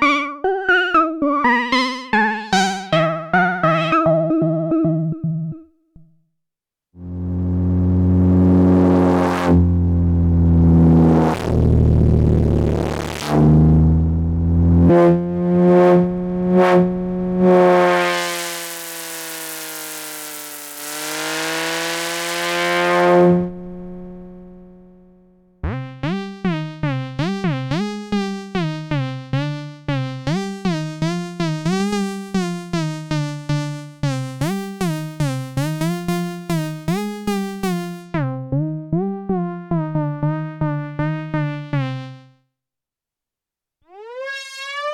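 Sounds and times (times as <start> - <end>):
sustained synthesizer patch: 0.0 - 5.2, 7.0 - 25.0, 43.9 - 44.9
sliding synthesizer notes: 0.0 - 5.6, 7.0 - 25.0, 25.6 - 42.3, 43.9 - 44.9.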